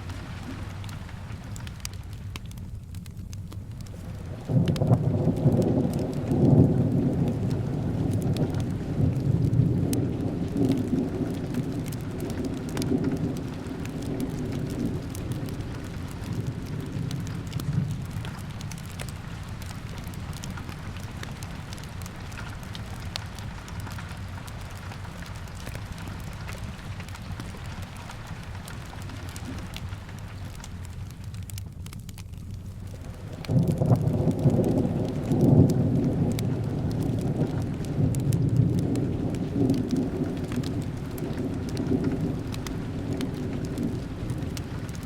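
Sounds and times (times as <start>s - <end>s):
fireplace crackling: 0.0s - 45.0s
steady rain: 0.0s - 45.0s
rolling thunder: 4.1s - 24.7s, 33.0s - 45.0s.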